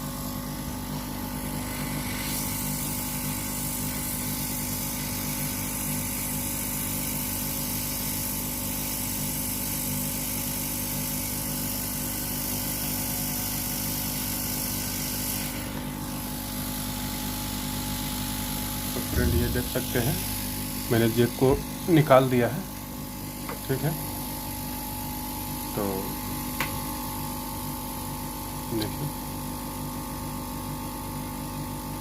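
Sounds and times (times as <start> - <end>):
hot-air station blowing: 18.9 - 20.4.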